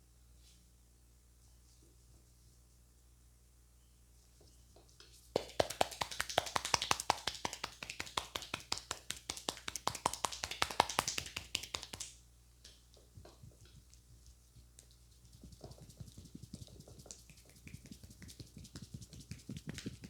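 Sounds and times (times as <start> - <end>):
hands tapping on a head: 5.4 - 12.2, 13.1 - 20.0.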